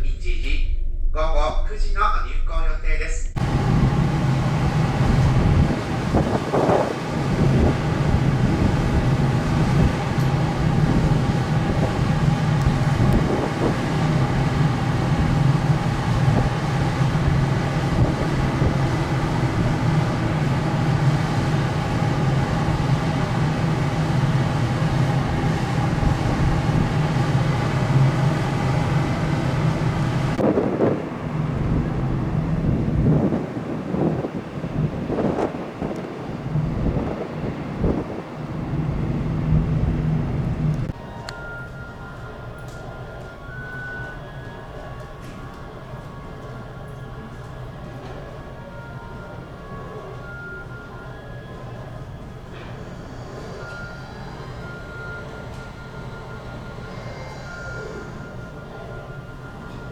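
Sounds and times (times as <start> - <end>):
ferry engine drone: 0.0 - 59.9
wind on microphone: 3.4 - 41.0.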